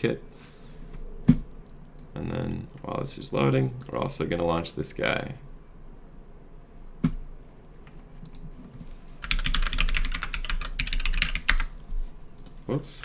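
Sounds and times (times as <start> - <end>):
typing on a computer keyboard: 9.2 - 11.7.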